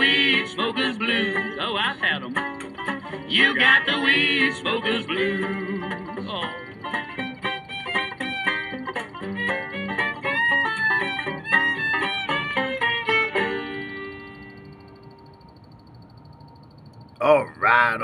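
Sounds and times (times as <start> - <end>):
bluegrass fiddle and picked strings: 4.9 - 13.6.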